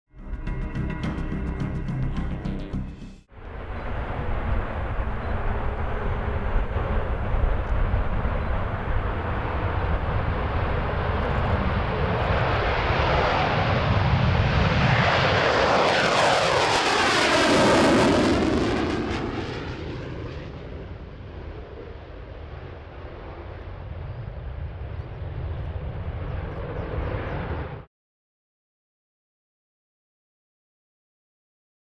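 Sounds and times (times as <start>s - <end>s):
jet engine roar: 3.4s - 27.9s.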